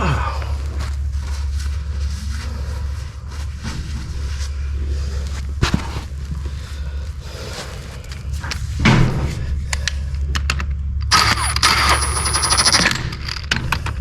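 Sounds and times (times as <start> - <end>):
power wrench buzzing: 11.1 - 13.1.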